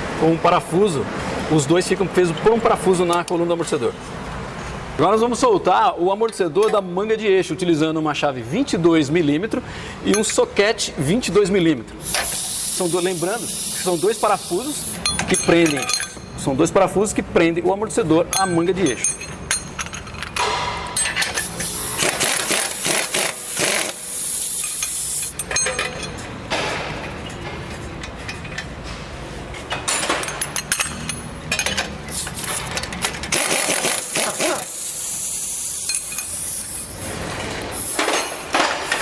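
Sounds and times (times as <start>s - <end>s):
wrench loosening bolts: 12.0s - 16.3s, 18.3s - 26.3s, 29.7s - 36.9s
metal hand tools clinking: 14.9s - 16.4s, 18.3s - 20.4s, 24.6s - 26.3s, 29.9s - 34.7s.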